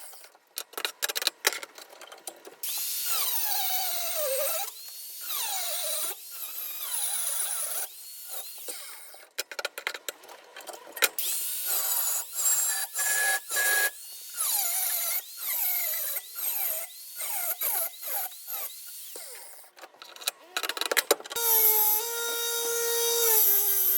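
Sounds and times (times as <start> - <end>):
electric drill motor: 2.7 - 9.2, 11.2 - 19.7, 21.4 - 23.9.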